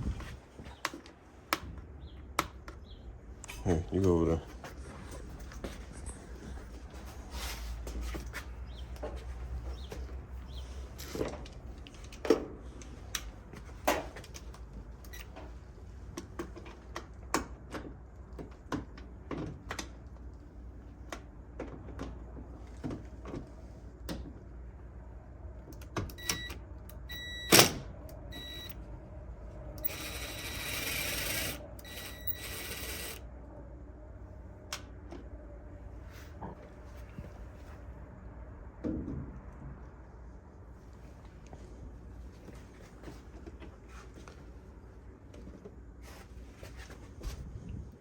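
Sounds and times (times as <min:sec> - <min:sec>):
short beeps: 0:26.2 - 0:27.6, 0:28.3 - 0:28.8.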